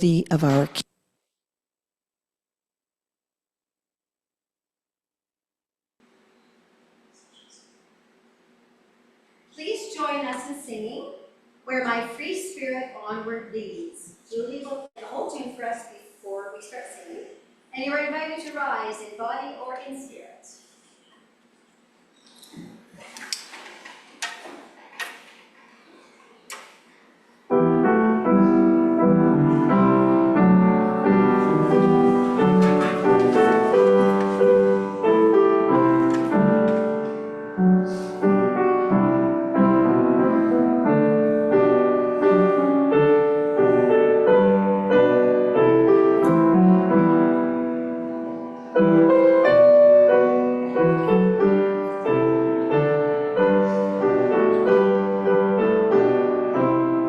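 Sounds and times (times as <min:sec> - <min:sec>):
piano playing hymn tune: 0:27.5 - 0:57.0.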